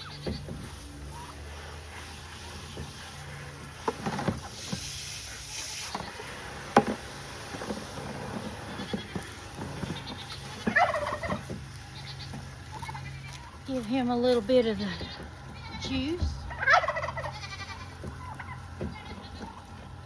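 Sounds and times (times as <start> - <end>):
goat bleating: 8.7 - 10.8, 11.7 - 13.6, 14.8 - 19.8.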